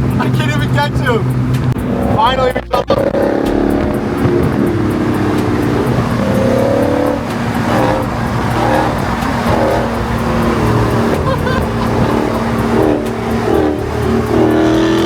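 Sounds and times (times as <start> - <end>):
vee eight engine: 0.0 - 15.0
small engine running flat out: 3.1 - 15.0.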